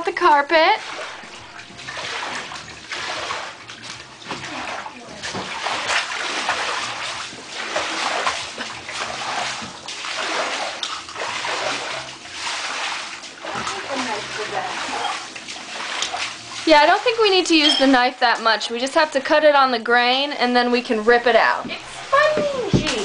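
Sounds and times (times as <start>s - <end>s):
floodwater splashing and sloshing: 0.0s - 23.0s.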